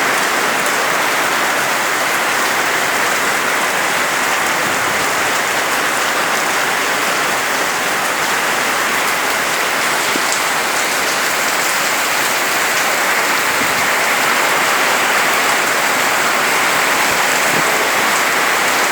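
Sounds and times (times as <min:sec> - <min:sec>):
heavy rain: 0:00.0 - 0:18.9.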